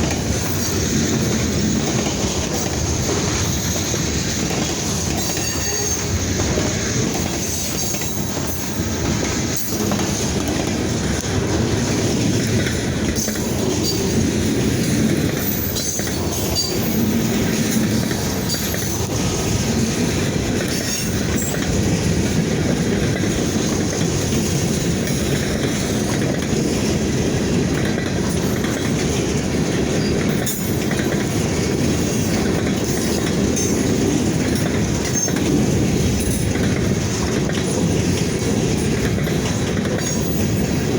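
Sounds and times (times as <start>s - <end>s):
freight train rumble: 0.0s - 40.9s
train wheels clacking over rail joints: 0.0s - 40.9s
train wheel squeal: 0.3s - 10.0s, 13.2s - 19.2s, 20.6s - 21.7s, 28.3s - 29.0s, 29.9s - 35.6s, 39.0s - 40.9s.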